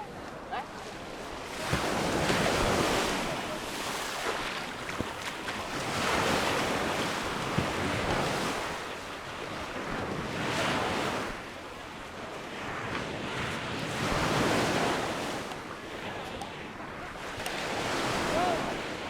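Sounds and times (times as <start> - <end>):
waves washing onto beach: 0.0 - 19.0.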